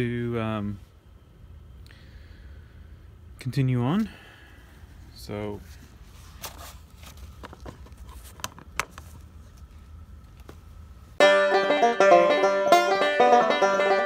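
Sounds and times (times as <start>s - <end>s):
bluegrass banjo music: 11.2s - 14.0s.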